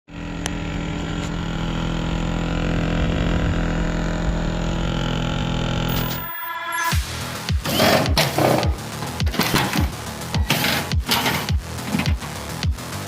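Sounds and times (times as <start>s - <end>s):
compressor humming: 0.1s - 6.3s.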